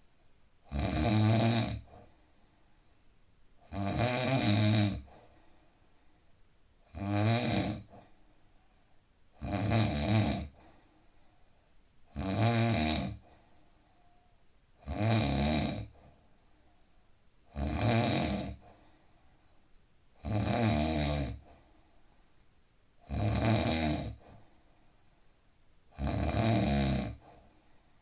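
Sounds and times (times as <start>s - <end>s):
quiet breathing: 0.0s - 0.7s, 1.8s - 3.7s, 5.0s - 6.9s, 7.6s - 9.4s, 10.4s - 12.1s, 13.1s - 14.6s, 15.8s - 17.5s, 18.4s - 20.2s, 21.3s - 23.1s, 24.1s - 26.0s, 27.0s - 28.0s
man snoring heavily: 0.7s - 1.9s, 3.7s - 5.1s, 6.9s - 7.9s, 9.4s - 10.6s, 12.1s - 13.2s, 14.8s - 16.0s, 17.5s - 18.7s, 20.2s - 21.4s, 23.0s - 24.2s, 26.0s - 27.3s.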